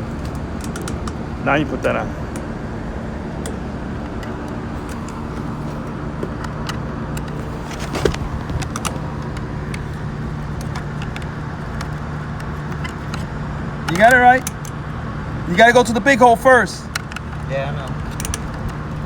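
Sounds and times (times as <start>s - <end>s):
low mechanical hum: 0.0s - 19.0s
clicks and taps of parts: 0.1s - 1.3s, 2.3s - 2.5s, 3.4s - 15.0s, 16.8s - 19.0s.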